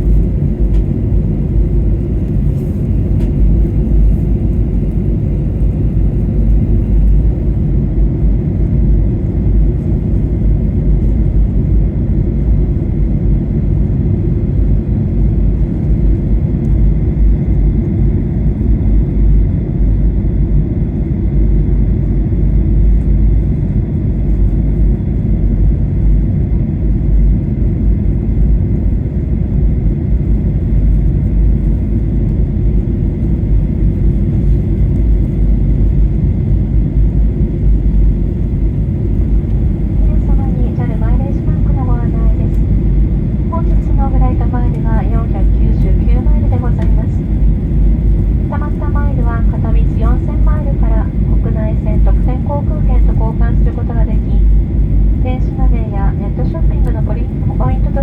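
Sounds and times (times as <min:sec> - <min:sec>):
airliner cabin engine rumble: 0:00.0 - 0:58.0.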